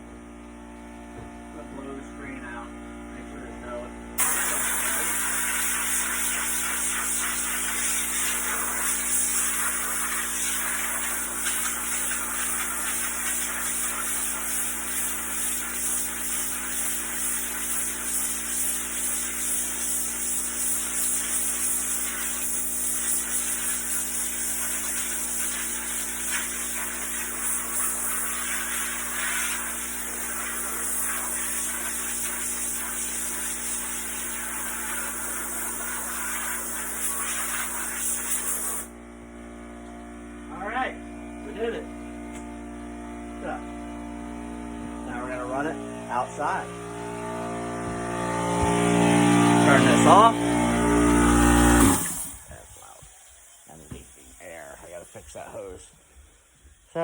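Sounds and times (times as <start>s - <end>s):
compressed air blow gun hissing: 4.2s - 38.9s, 51.6s - 56.6s.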